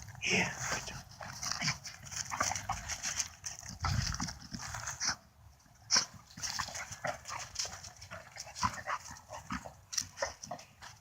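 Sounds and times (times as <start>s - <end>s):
clicks and rustles: 0.8s - 5.2s.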